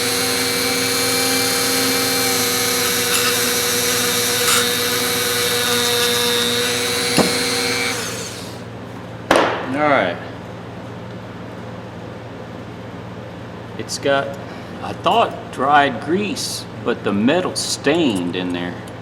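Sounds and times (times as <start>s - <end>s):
power tool motor running: 0.0s - 8.7s.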